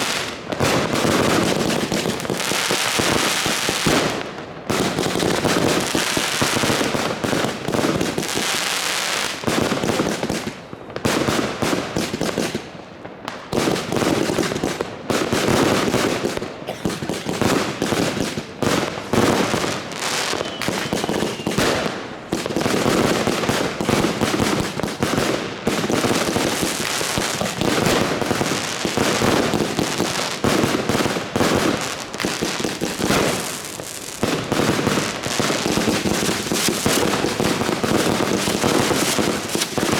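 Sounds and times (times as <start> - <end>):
fireworks and firecrackers banging: 0.0 - 39.9.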